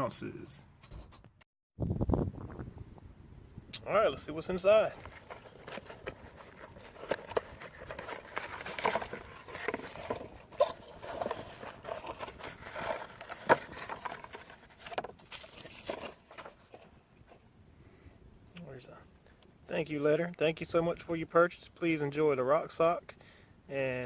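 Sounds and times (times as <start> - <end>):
packaging rustling and crinkling: 4.5 - 17.4.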